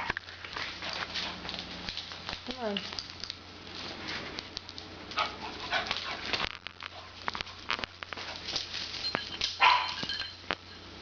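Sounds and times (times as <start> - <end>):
dogs panting: 0.5 - 3.9, 5.0 - 8.9.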